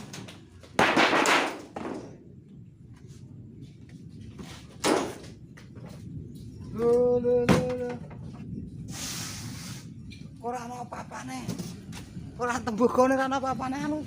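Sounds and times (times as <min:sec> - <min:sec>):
short hiss: 0:08.9 - 0:09.9.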